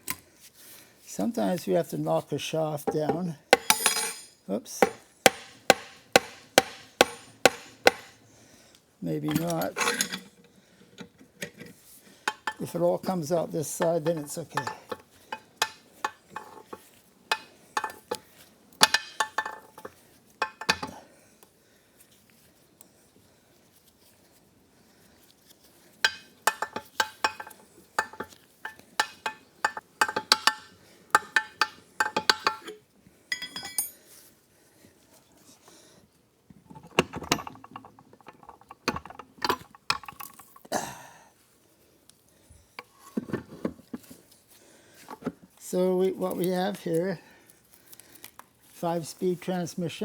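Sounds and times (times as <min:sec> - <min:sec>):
metal taps and clinks: 0:02.9 - 0:08.2, 0:12.3 - 0:12.7, 0:13.9 - 0:18.2, 0:18.8 - 0:21.0, 0:26.0 - 0:34.0, 0:36.8 - 0:40.4
metal gears clinking: 0:03.6 - 0:04.4.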